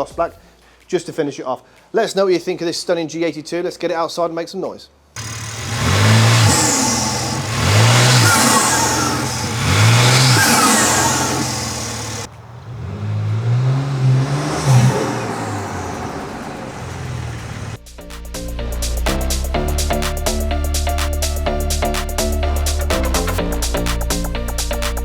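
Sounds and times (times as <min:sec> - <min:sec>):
car engine revving: 0:05.2 - 0:17.8.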